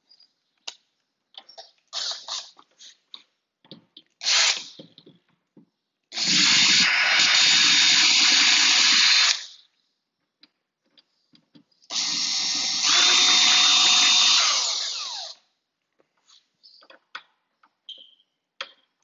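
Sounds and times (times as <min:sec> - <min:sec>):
power drill running: 0:06.2 - 0:09.5, 0:11.9 - 0:15.4.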